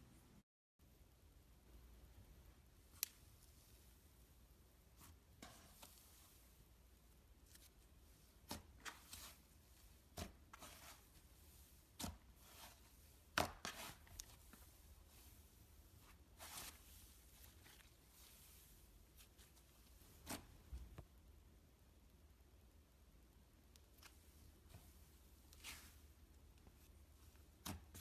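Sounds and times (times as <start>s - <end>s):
soft slime crackle: 4.9s - 21.0s, 23.7s - 28.0s.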